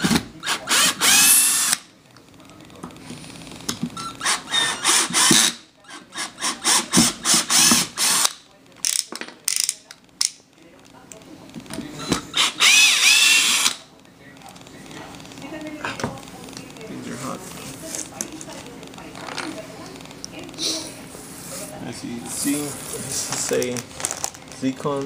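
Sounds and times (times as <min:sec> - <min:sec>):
drill clicking: 0:00.4 - 0:01.8, 0:12.4 - 0:13.8
power drill whirring: 0:00.4 - 0:01.8, 0:04.0 - 0:08.3, 0:12.3 - 0:13.8.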